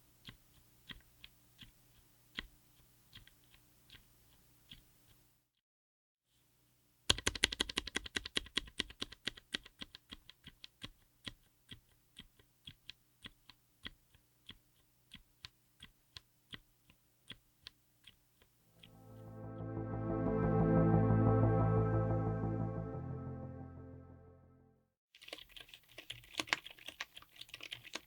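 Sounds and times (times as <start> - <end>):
muted keyboard typing: 7.1 - 18.2, 25.2 - 28.0.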